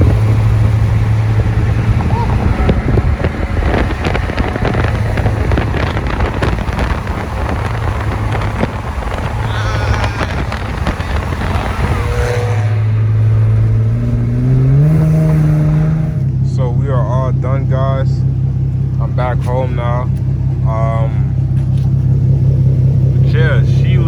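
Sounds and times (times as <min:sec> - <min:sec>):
car engine driving: 0:00.0 - 0:24.0
road noise: 0:00.0 - 0:24.0.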